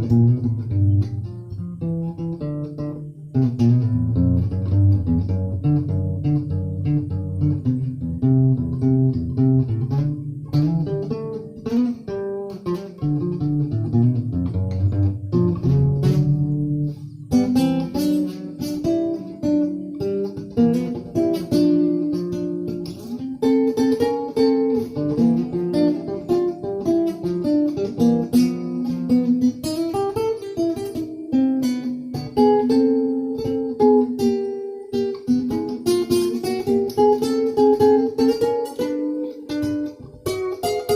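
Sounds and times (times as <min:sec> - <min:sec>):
plucked and strummed guitar: 0:00.0 - 0:40.9.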